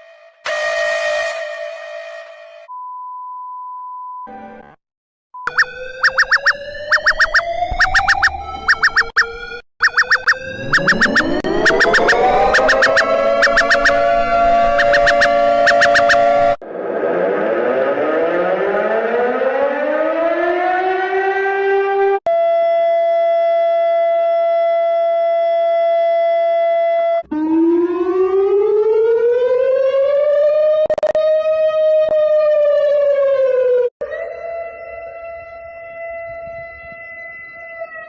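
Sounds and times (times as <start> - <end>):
siren wail rising and falling: 0.4 - 2.7, 5.5 - 38.0
siren winding up: 5.4 - 20.2
steady electronic alert tone: 5.5 - 16.6.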